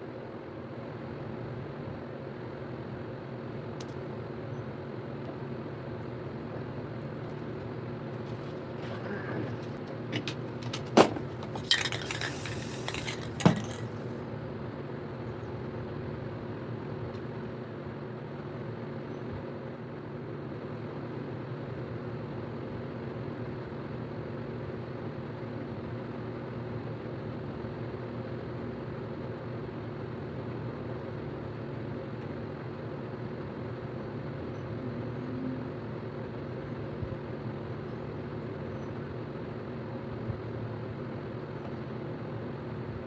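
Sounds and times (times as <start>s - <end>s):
metal spray cans clinking: 8.2s - 14.1s
spray hiss: 12.1s - 13.6s.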